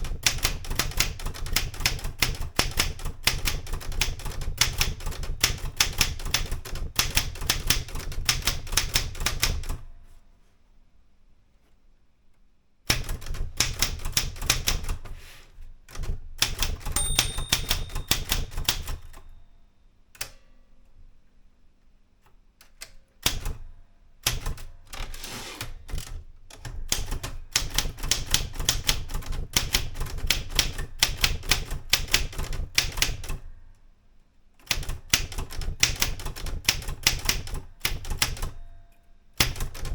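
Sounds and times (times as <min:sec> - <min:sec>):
manual typewriter keystrokes: 0:00.0 - 0:09.8, 0:12.9 - 0:15.2, 0:15.9 - 0:19.3, 0:22.6 - 0:23.6, 0:24.2 - 0:25.2, 0:25.9 - 0:33.5, 0:34.6 - 0:38.6, 0:39.4 - 0:39.9
typewriter bell ring: 0:17.0 - 0:19.3.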